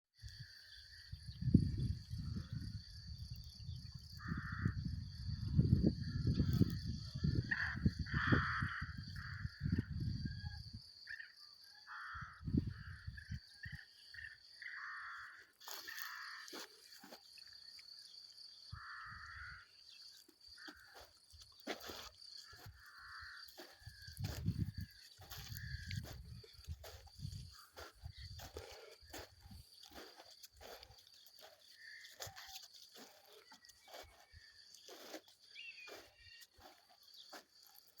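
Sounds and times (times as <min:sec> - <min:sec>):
wind rumbling on microphone: 0:00.3 - 0:10.9, 0:12.2 - 0:13.8, 0:23.1 - 0:30.8.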